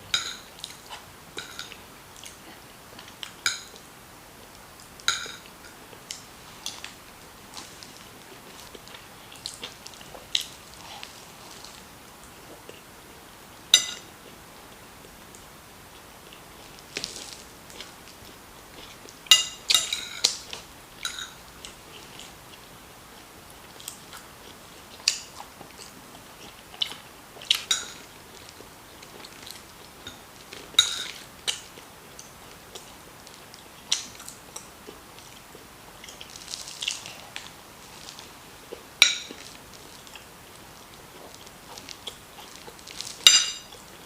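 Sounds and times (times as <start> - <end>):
person chewing: 4.5 - 12.9, 14.0 - 44.0
cutlery clicking on a plate: 5.1 - 5.5, 13.8 - 14.0, 30.8 - 31.2, 43.2 - 43.8.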